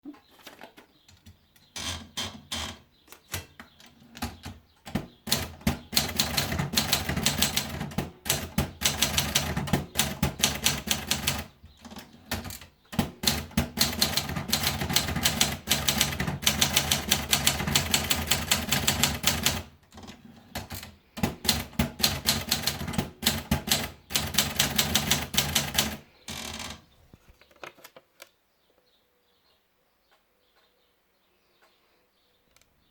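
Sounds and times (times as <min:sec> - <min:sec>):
manual typewriter typing: 0:01.8 - 0:26.8.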